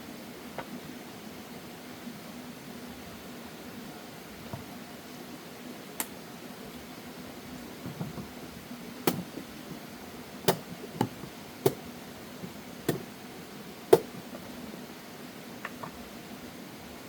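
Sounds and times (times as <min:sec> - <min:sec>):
faint steady hum: 0:00.0 - 0:17.0
sharp knocks: 0:09.1 - 0:09.4, 0:10.5 - 0:11.8, 0:12.9 - 0:13.1, 0:13.9 - 0:14.2.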